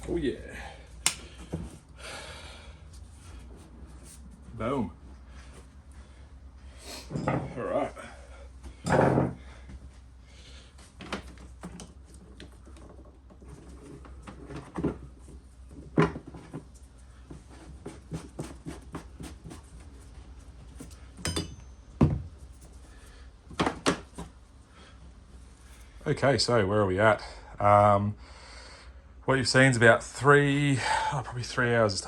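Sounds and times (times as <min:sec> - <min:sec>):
steady low hum: 0:16.8 - 0:23.5
hand tools and parts clattering: 0:20.8 - 0:22.8.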